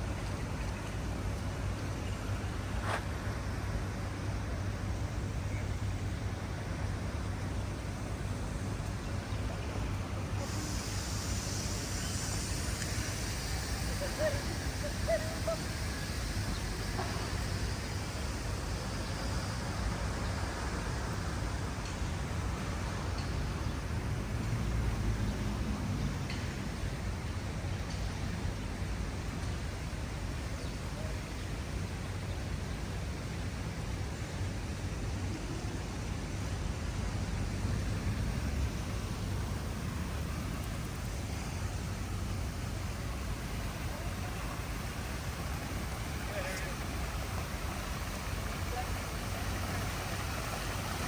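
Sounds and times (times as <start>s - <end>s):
low rumble of traffic: 0.0s - 51.0s
broad hiss: 10.0s - 24.6s, 34.8s - 51.0s.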